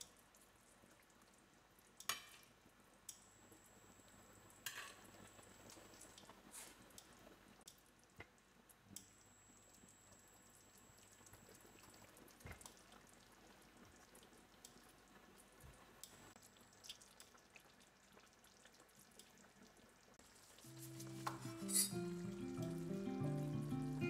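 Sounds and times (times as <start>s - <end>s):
faint frying sizzle: 0.0s - 24.0s
soft instrumental music: 20.7s - 24.0s.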